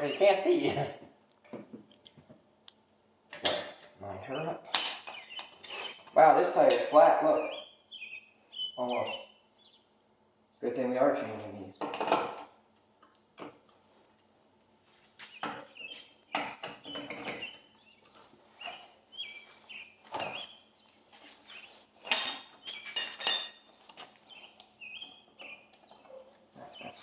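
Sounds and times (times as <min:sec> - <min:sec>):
birds chirping: 0:00.0 - 0:01.0, 0:04.0 - 0:11.7, 0:15.1 - 0:27.0.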